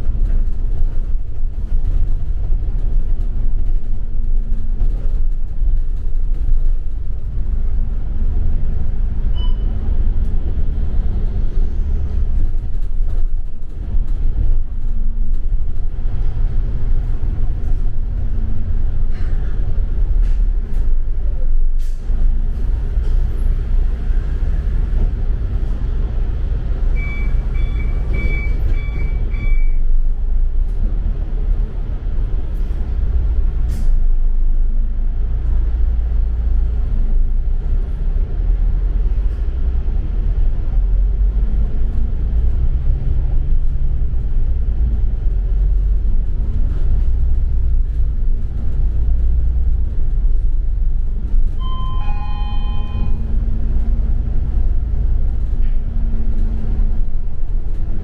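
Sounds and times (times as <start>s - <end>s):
bus engine and road rumble: 0.0s - 58.0s
short electronic beeps: 9.3s - 9.7s, 27.0s - 29.8s, 51.6s - 53.3s.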